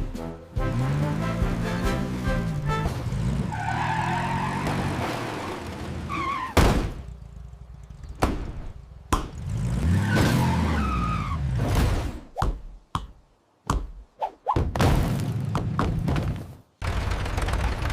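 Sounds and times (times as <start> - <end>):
tractor engine running: 16.8 - 17.9.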